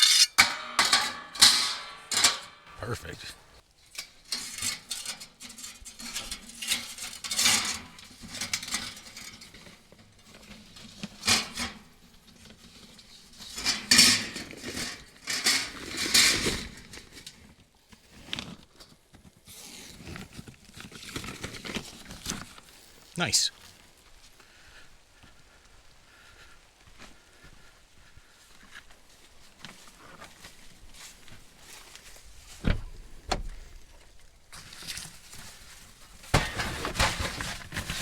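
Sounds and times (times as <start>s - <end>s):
metal parts clattering and scraping: 0.0s - 2.7s, 36.4s - 38.0s.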